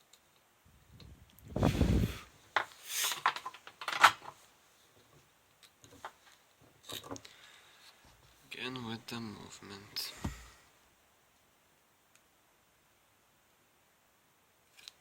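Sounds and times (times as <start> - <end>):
dull thud on bench: 10.2 - 10.6.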